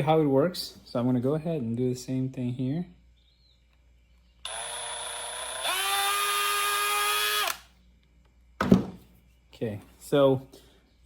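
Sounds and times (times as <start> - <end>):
electric drill motor whine: 4.4 - 7.7.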